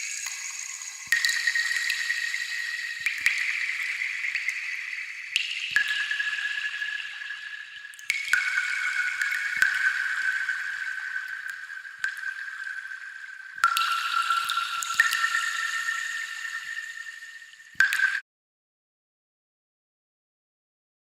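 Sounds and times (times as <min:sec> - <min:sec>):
water trickling and gurgling: 0:00.0 - 0:18.2.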